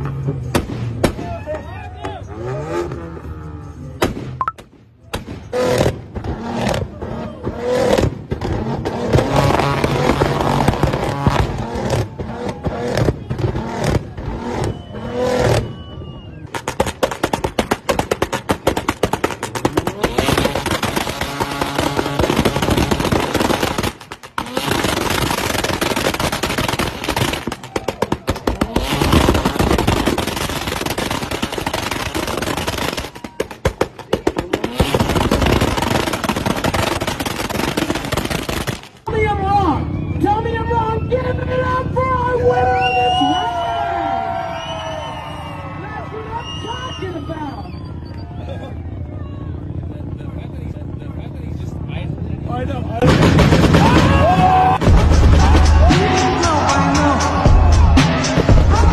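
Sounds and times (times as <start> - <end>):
car engines revving hard: 0.0 - 1.2, 2.0 - 4.4, 5.4 - 27.5, 28.2 - 33.2, 33.9 - 38.3
exhaust popping and crackling: 4.0 - 39.2, 51.7 - 58.9.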